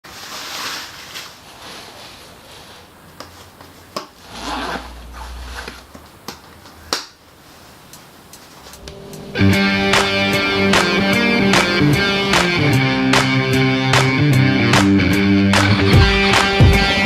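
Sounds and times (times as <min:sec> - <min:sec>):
close rustling and handling: 0:00.0 - 0:08.8
low rumble: 0:04.4 - 0:05.8.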